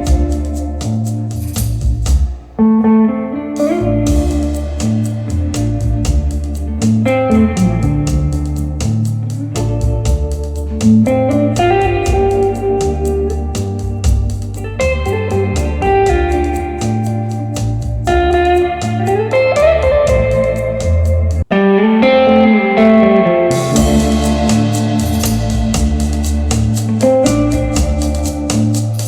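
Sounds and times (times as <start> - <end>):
pop-rock music over speakers: 22.5 - 29.0.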